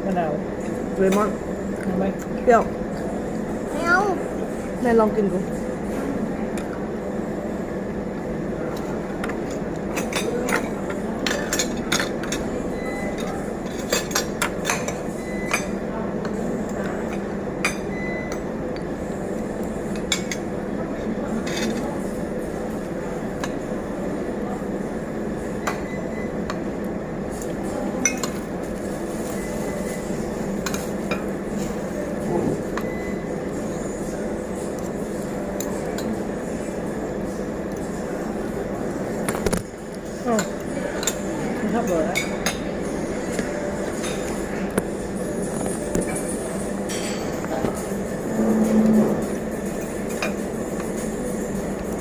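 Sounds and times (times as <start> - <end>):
restaurant murmur: 0.0 - 52.0.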